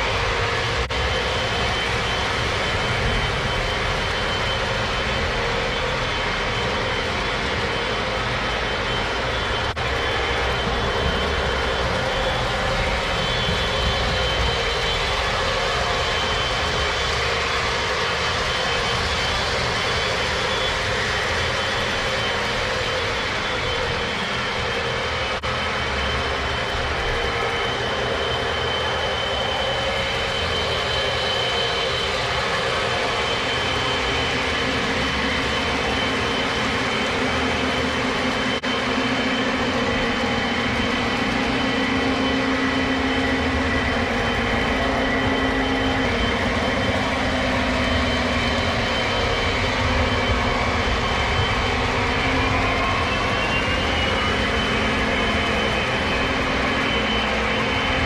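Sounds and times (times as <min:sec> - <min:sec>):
wheels on track: 0:32.1 - 0:58.0.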